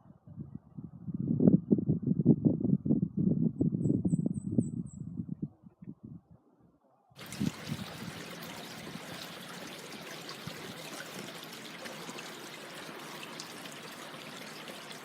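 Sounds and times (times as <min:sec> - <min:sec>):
water trickling: 0:07.2 - 0:15.0.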